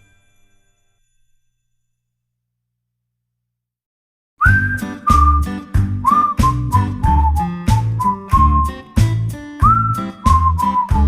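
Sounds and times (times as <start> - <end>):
whistled melody: 4.4 - 11.0.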